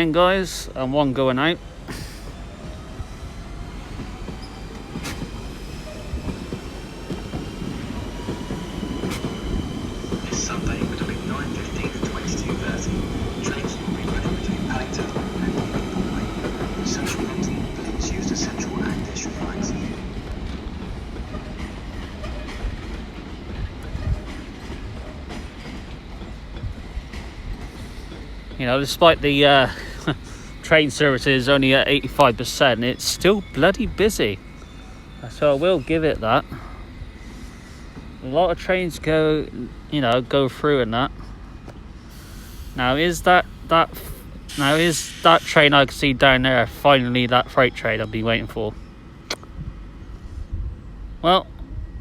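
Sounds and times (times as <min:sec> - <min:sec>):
train wheels rumbling on rail: 0:00.0 - 0:52.0
faint high squeal: 0:32.8 - 0:37.8
sharp click: 0:49.3 - 0:49.5.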